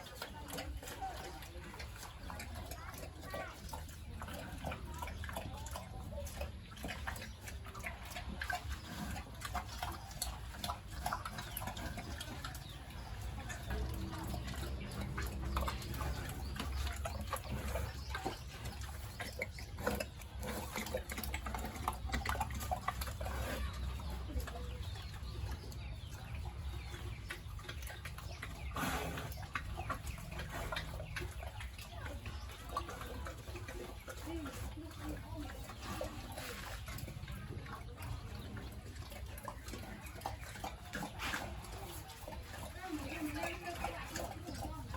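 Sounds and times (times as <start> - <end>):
animals shuffling in a pen: 0.0 - 44.9
farm animals calling: 0.0 - 44.9.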